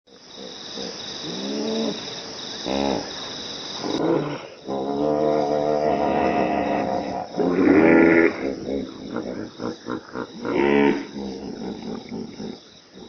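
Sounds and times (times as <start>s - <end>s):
crickets chirping: 0.1s - 13.0s
hippopotamus calling: 3.9s - 13.0s.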